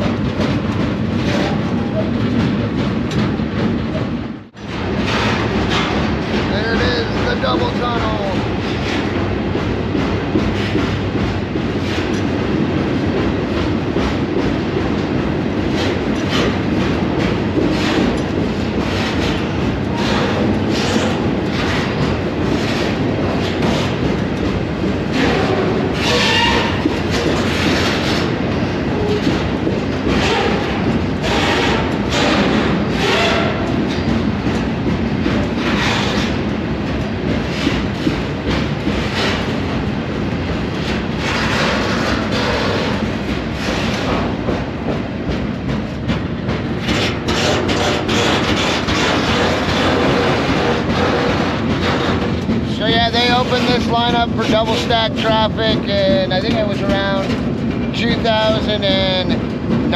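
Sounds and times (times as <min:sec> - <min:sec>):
freight train rumble: 0:00.0 - 0:59.9
train cars clanking: 0:00.0 - 0:59.9
wheels clattering over rail joints: 0:00.0 - 0:59.9
steel wheels squealing on rail: 0:25.2 - 0:28.2, 0:30.1 - 0:34.1, 0:41.2 - 0:44.3.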